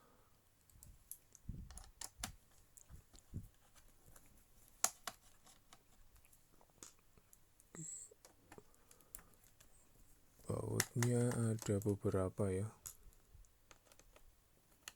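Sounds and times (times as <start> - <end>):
laptop and tools clicking: 0.6 - 3.3, 4.1 - 7.4, 10.4 - 12.2, 12.8 - 14.9.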